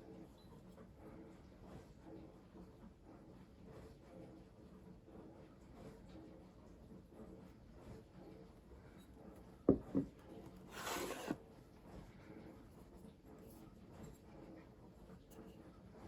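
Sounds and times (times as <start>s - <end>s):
packaging scraping: 10.7s - 11.4s.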